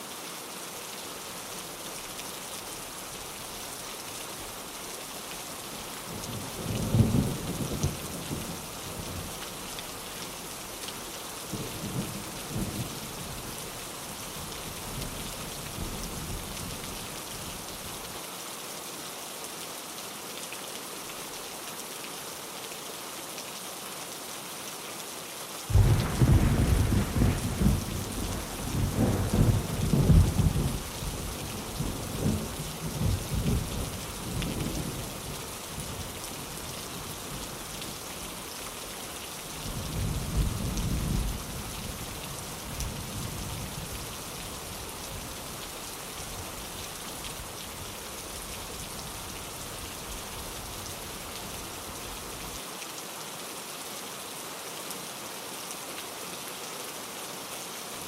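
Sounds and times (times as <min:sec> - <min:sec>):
steady rain: 0:00.0 - 0:58.0
thunder rumbling: 0:25.7 - 0:30.9.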